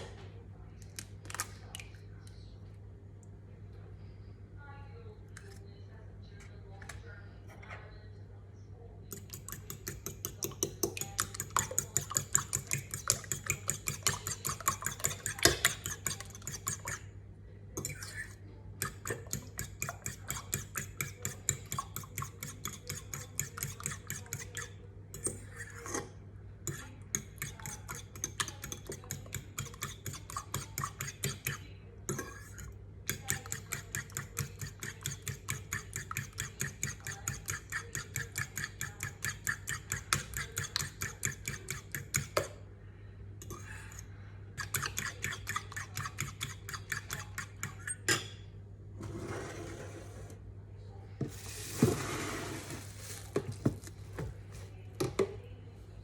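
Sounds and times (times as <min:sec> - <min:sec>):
steady low hum: 0:00.0 - 0:56.0
utensil clinking beating eggs: 0:09.1 - 0:17.0, 0:17.8 - 0:26.1, 0:26.7 - 0:42.5, 0:44.6 - 0:48.4.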